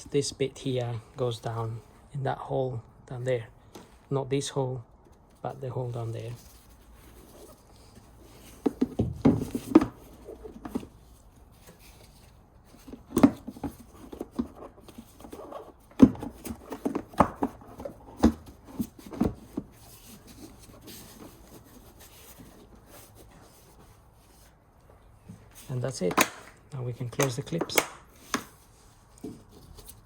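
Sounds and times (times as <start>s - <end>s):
plastic cover knocking and rattling: 8.6s - 10.9s.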